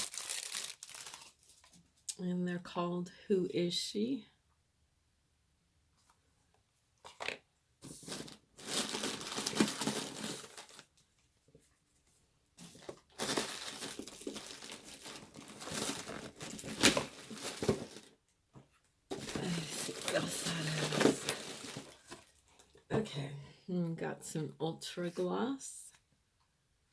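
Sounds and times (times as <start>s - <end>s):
crinkly packaging torn open: 0.0s - 1.7s, 8.2s - 10.9s, 13.1s - 18.1s.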